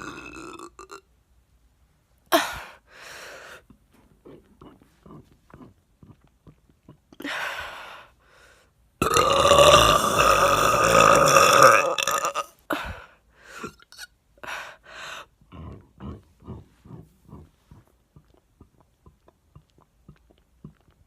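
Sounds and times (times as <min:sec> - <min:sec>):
woman burping: 0:00.0 - 0:01.0, 0:02.3 - 0:02.8, 0:09.0 - 0:13.0.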